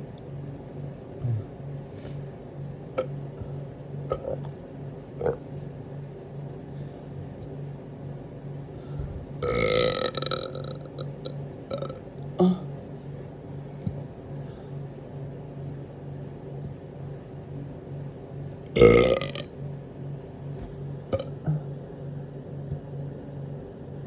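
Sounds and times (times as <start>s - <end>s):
steady low hum: 0.0s - 24.0s
person burping: 1.2s - 1.4s, 11.8s - 12.7s, 21.1s - 21.7s.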